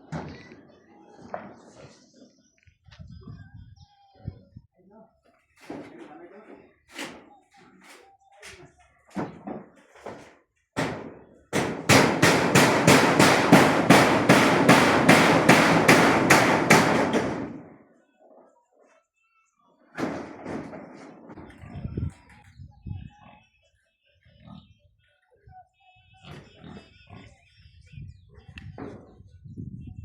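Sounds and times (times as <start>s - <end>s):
rapid loud knocks: 10.8s - 17.7s.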